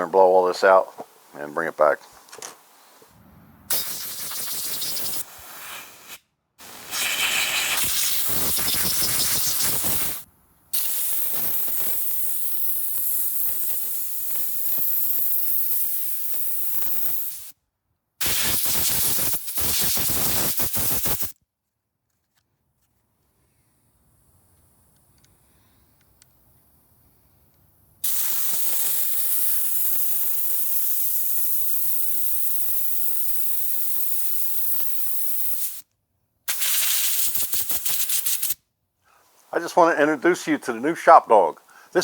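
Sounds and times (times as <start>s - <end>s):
compressed air blow gun hissing: 2.8s - 17.6s, 18.2s - 21.3s, 28.0s - 35.8s, 36.5s - 38.6s.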